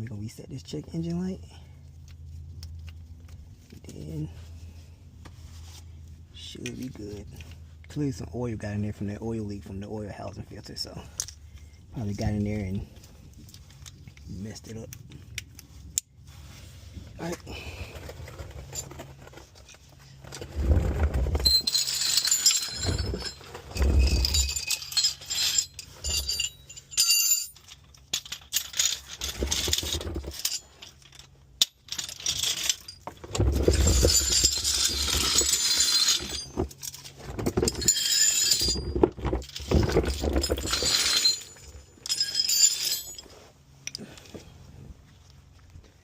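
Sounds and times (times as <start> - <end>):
metal tools clinking: 17.2 - 44.3.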